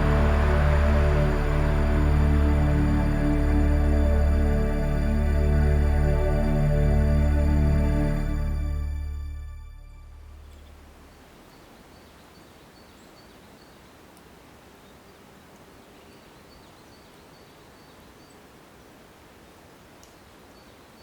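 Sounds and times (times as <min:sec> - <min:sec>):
faint clicks: 0:20.0 - 0:20.3.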